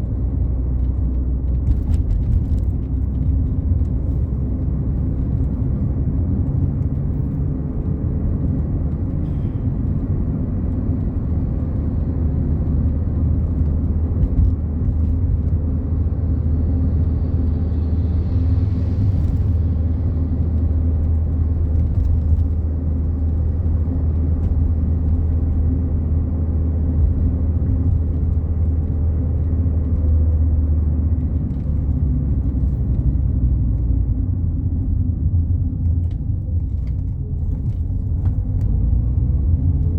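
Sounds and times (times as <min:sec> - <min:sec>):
car interior road rumble: 0:00.0 - 0:39.9.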